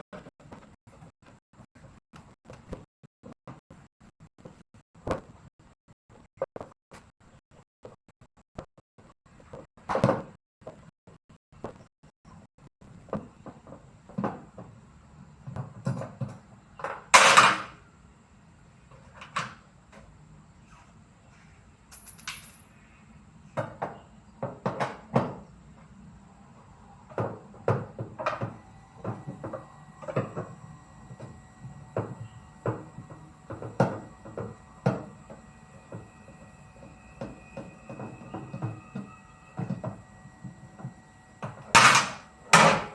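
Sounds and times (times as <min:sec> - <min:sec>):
tools and machine parts clattering: 0:21.9 - 0:22.8.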